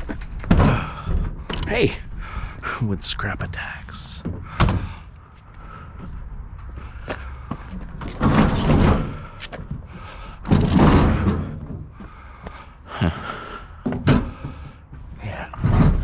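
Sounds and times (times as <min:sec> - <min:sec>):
metal cabinet scraping and banging: 0:07.9 - 0:09.4, 0:10.4 - 0:12.0, 0:15.6 - 0:16.0.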